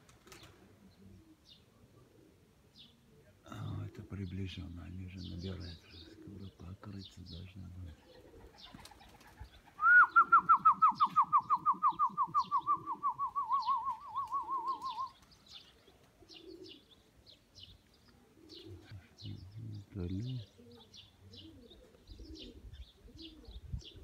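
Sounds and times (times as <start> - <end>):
pigeons cooing: 0.0 - 24.0
person whistling warbling: 9.8 - 15.1.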